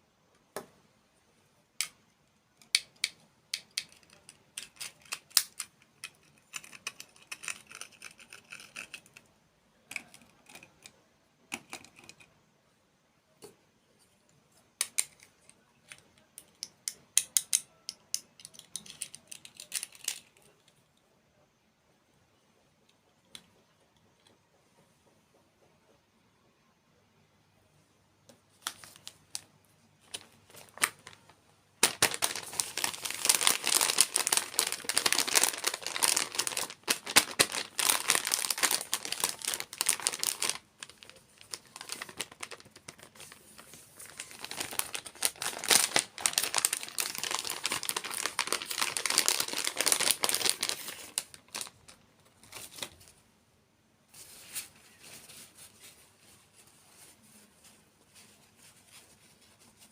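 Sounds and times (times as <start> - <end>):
plastic packaging crinkling and tearing: 28.6 - 53.1.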